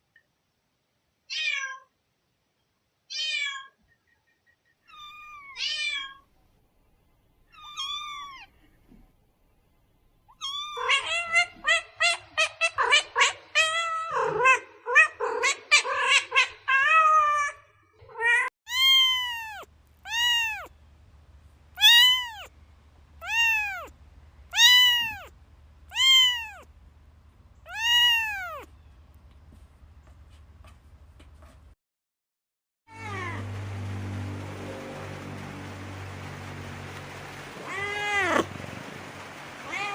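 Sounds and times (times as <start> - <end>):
cat meowing: 1.3 - 1.9, 3.1 - 3.8, 4.9 - 6.2, 7.5 - 8.6, 10.3 - 17.6, 18.2 - 20.7, 21.8 - 22.5, 23.2 - 23.9, 24.5 - 25.3, 25.9 - 26.7, 27.6 - 28.8, 32.9 - 33.4, 37.6 - 38.5, 39.7 - 39.9.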